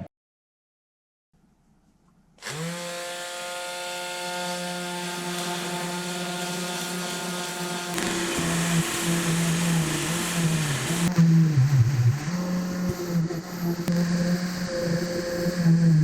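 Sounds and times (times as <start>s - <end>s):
power tool motor whine: 2.4s - 11.2s.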